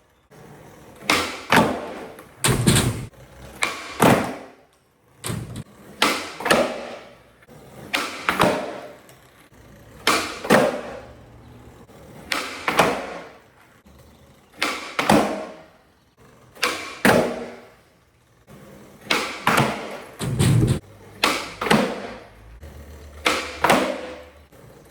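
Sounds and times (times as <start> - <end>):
skateboard landing: 0.9 - 4.6, 5.2 - 9.1, 9.9 - 11.0, 12.0 - 13.4, 14.6 - 15.8, 16.6 - 17.8, 19.0 - 22.3, 23.2 - 24.3
skateboard tail popping: 7.9 - 9.0, 19.0 - 22.2.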